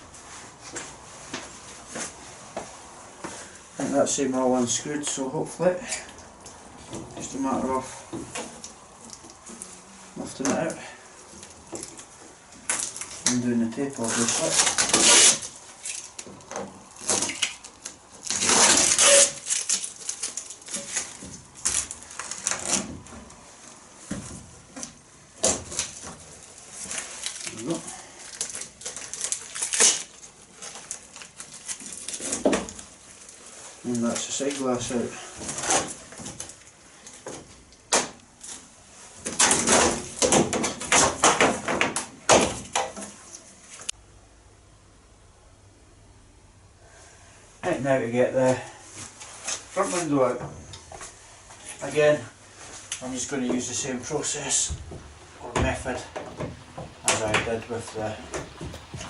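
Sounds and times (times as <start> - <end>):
tape ripping hiss: 11.3 - 24.1, 24.8 - 37.3, 51.0 - 59.0
clattering rustling knocks: 54.4 - 59.0.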